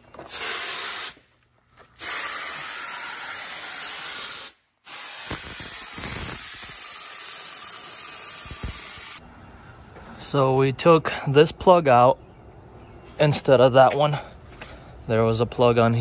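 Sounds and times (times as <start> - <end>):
compressed air hissing: 0.3 - 1.3, 2.0 - 9.2.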